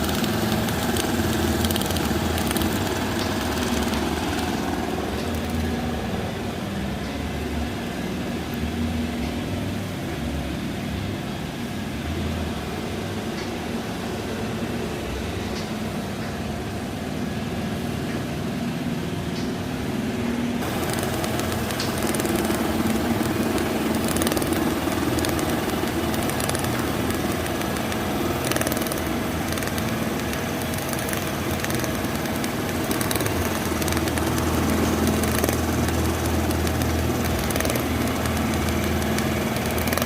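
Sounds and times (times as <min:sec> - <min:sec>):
welding equipment hum: 0:00.0 - 0:09.9, 0:20.6 - 0:40.0
hissing: 0:20.6 - 0:40.0.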